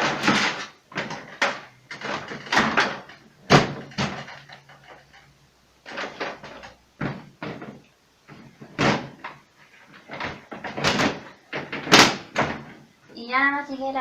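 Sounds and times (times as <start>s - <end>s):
plastic panels knocking: 0.0s - 12.9s.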